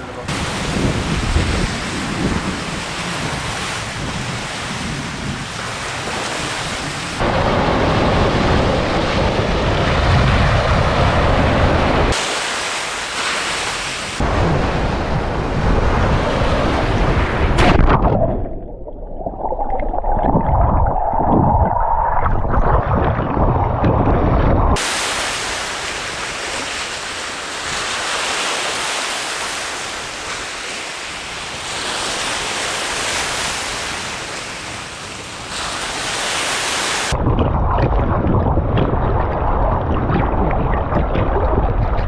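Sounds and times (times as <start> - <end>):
wind buffeting microphone: 0.0 - 12.2, 14.1 - 26.6, 37.0 - 42.0
waves washing on shore: 0.0 - 18.6, 22.6 - 37.2.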